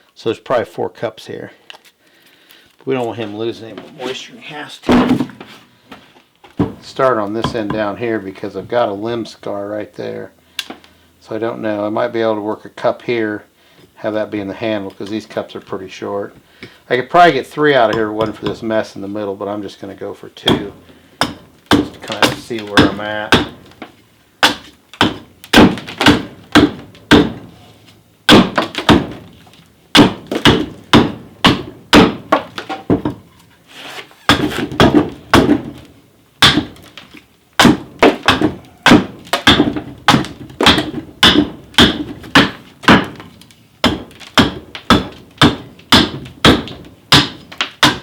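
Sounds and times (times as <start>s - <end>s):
wooden thunks of blows into wood: 4.8s - 7.8s, 21.2s - 27.6s, 28.3s - 33.3s, 34.3s - 48.0s.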